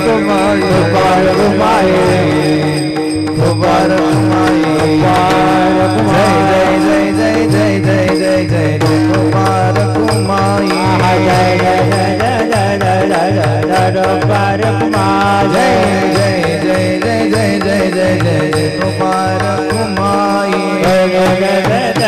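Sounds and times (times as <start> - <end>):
melody over held drone: 0.0 - 12.8
running drum pattern: 0.0 - 22.0.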